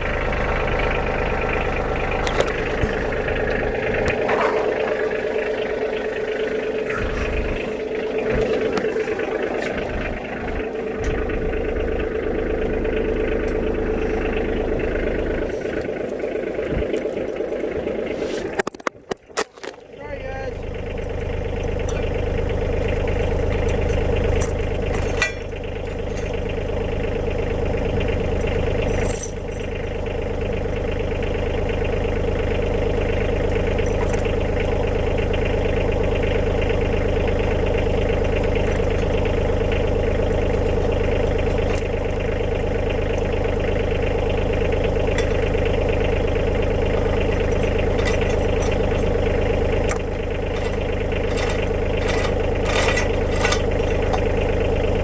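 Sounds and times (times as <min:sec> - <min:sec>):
tractor engine running: 0:00.0 - 0:55.0
metallic clinks: 0:13.4 - 0:18.6, 0:20.5 - 0:31.0, 0:33.2 - 0:34.6, 0:37.4 - 0:55.0.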